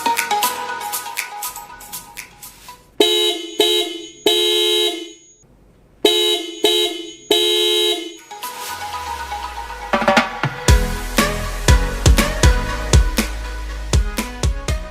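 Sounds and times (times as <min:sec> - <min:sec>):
dual-tone car horn honking: 0:03.0 - 0:05.3, 0:06.0 - 0:09.3.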